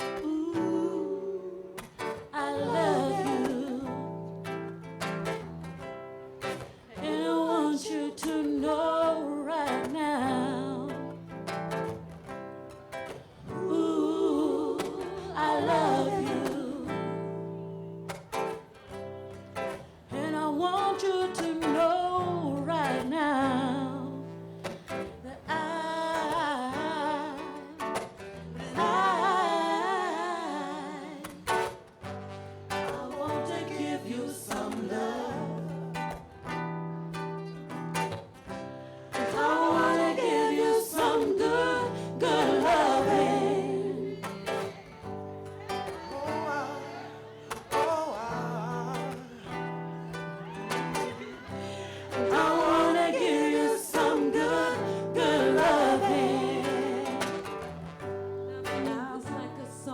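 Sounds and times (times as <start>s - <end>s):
singers holding gliding notes: 0.0s - 5.4s, 13.1s - 19.4s, 26.7s - 36.4s, 39.1s - 59.9s
acoustic guitar accompaniment: 0.0s - 59.9s.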